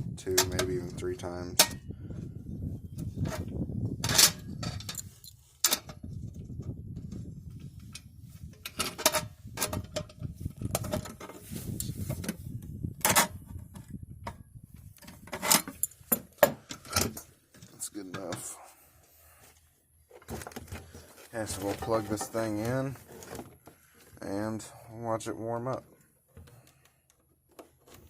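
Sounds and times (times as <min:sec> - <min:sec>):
metal fixture clicks and knocks: 0:01.5 - 0:01.8.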